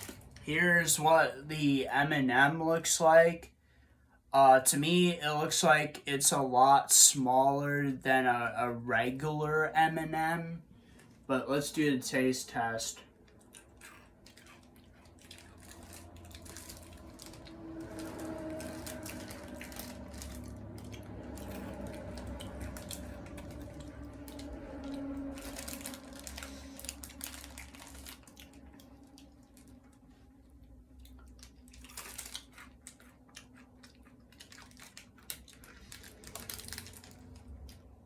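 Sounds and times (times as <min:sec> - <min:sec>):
low steady hum: 0:00.0 - 0:38.0
person chewing crunchy candy: 0:13.2 - 0:30.0, 0:30.9 - 0:37.8.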